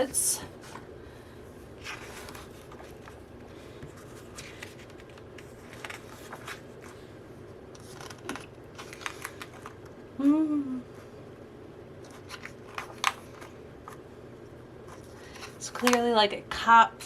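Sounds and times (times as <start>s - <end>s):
paper rustling: 1.8s - 7.1s, 7.7s - 9.8s.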